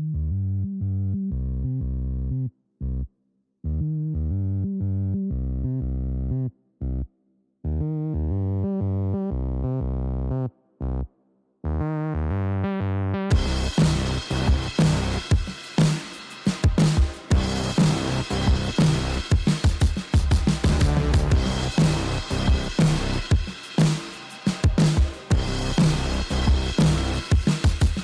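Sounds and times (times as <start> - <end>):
electronic music with synth bass: 11.7 - 28.0.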